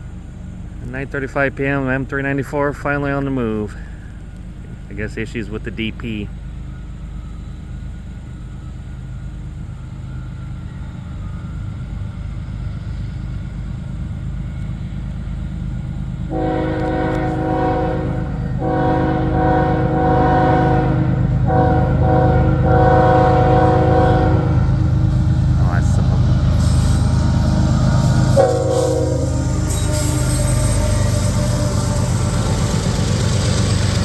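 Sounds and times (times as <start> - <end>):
diesel locomotive rumble: 0.0 - 34.0
locomotive air horn blasts: 16.3 - 25.0, 28.0 - 32.7.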